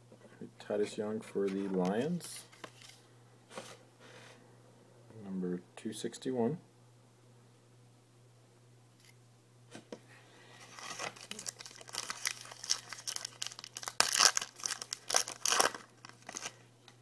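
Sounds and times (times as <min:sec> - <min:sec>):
card pack wrapper tearing and crinkling: 0:10.7 - 0:16.6.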